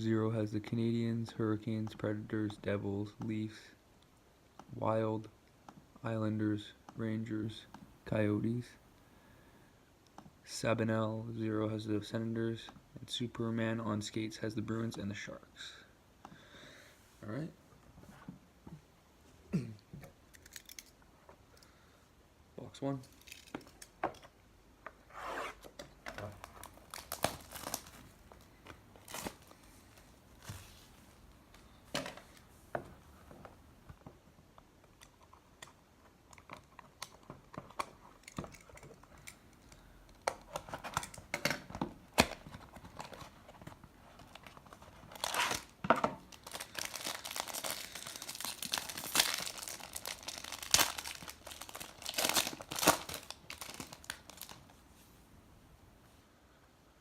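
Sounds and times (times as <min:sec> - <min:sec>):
plastic wrapping tearing and crinkling: 0:26.3 - 0:28.1, 0:29.0 - 0:29.6, 0:44.1 - 0:54.7.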